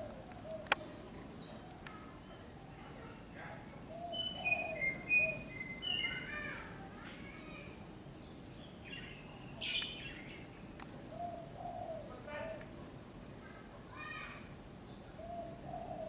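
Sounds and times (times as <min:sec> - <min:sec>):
dove cooing: 0:00.0 - 0:01.7, 0:03.8 - 0:06.6, 0:11.1 - 0:12.7, 0:15.1 - 0:16.0
small birds chirping: 0:00.0 - 0:16.0.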